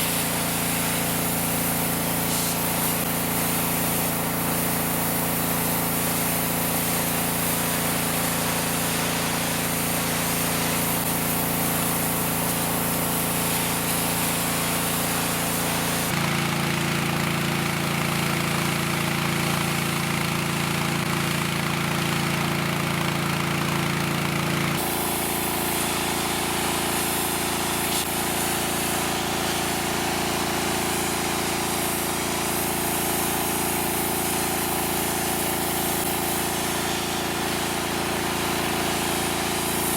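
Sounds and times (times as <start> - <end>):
water spray hissing: 0.0 - 16.2, 24.8 - 39.9.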